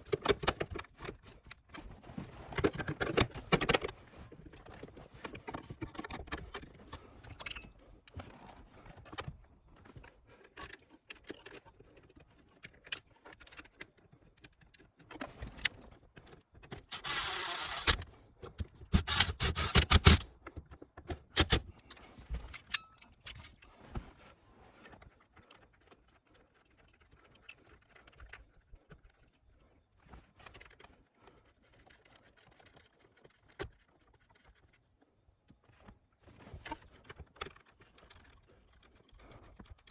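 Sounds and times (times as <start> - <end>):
metal tools clicking and clanking: 21.3 - 23.7.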